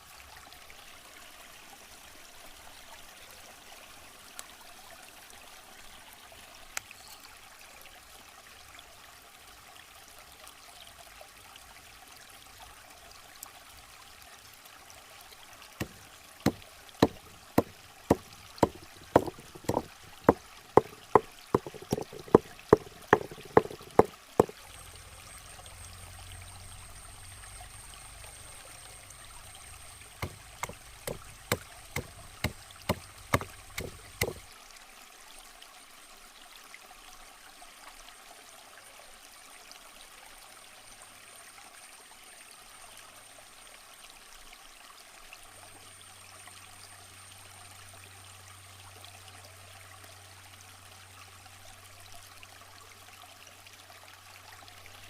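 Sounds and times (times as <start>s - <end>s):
faint rush of water-like noise: 0.0s - 55.0s
sharp knocks: 15.8s - 24.7s, 30.0s - 34.4s.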